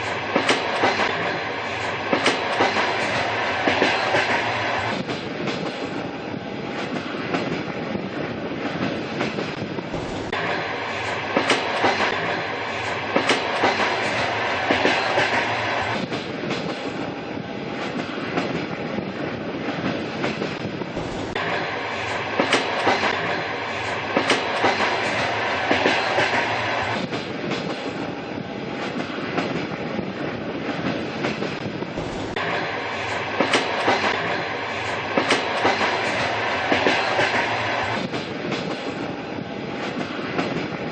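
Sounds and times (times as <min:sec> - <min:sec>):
train rumbling on track: 0:00.0 - 0:40.9
wheels clacking over rail joints: 0:00.4 - 0:06.0, 0:11.3 - 0:17.0, 0:19.8 - 0:28.0, 0:30.7 - 0:39.1.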